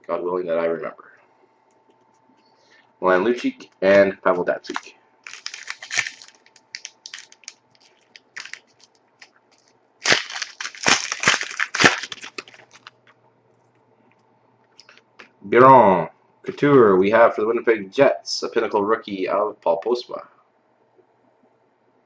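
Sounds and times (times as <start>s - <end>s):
cards rustling: 4.5s - 13.0s
foil wrapper crinkling and tearing: 4.6s - 13.1s.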